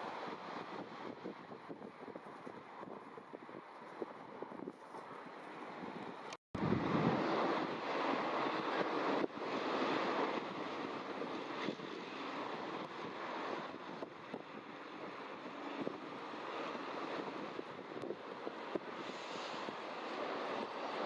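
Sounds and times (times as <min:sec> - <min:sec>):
wind and sea rushing: 0:00.0 - 0:21.0.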